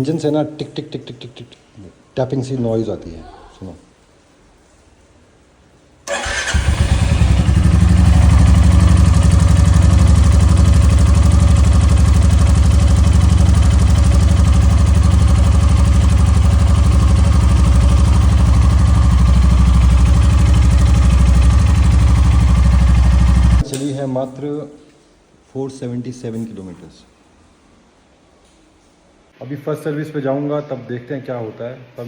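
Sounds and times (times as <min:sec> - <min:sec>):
engine ticking: 0:06.1 - 0:23.6
motorcycle engine starting and idling: 0:06.1 - 0:23.7.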